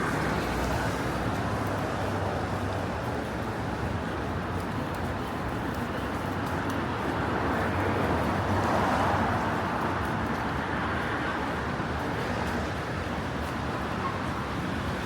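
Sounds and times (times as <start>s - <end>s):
traffic on wet road: 0.0s - 15.0s.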